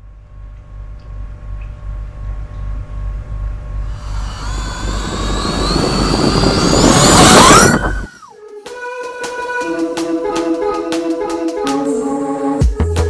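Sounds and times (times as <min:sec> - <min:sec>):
jet rumble with rising whine: 0:00.4 - 0:08.3.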